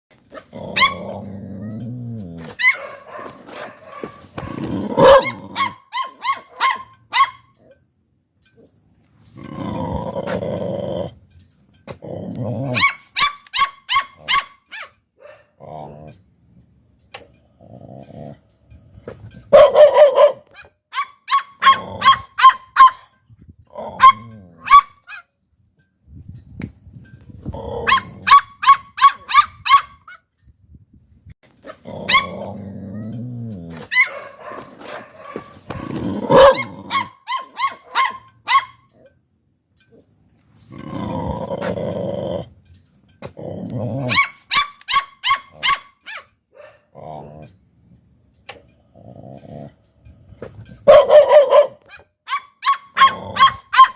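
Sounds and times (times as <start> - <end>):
puppies barking: 0.3 - 1.2, 2.4 - 7.6, 12.7 - 15.5, 19.5 - 23.1, 24.0 - 25.3, 33.8 - 38.9, 44.0 - 46.9, 50.8 - 53.9
puppies growling: 0.3 - 5.7, 9.4 - 11.2, 12.0 - 12.8, 31.7 - 37.1, 40.7 - 42.6, 43.4 - 44.2, 48.8 - 49.8.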